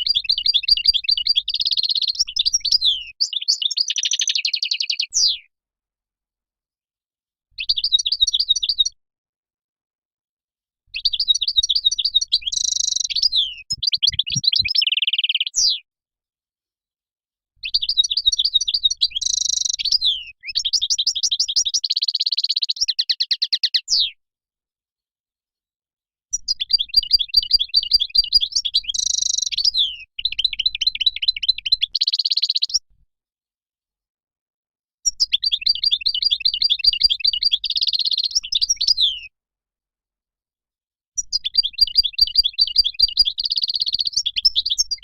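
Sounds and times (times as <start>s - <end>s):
goldfinch twittering song: 0.0s - 5.4s, 11.0s - 15.7s, 17.6s - 23.8s, 26.4s - 32.8s.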